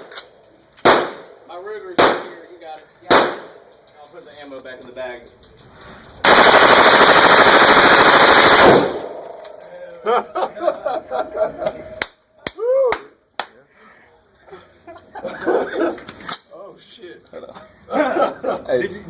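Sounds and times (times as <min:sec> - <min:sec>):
automatic gunfire: 0:00.8 - 0:01.3, 0:02.0 - 0:02.4, 0:03.1 - 0:03.6, 0:06.2 - 0:09.3.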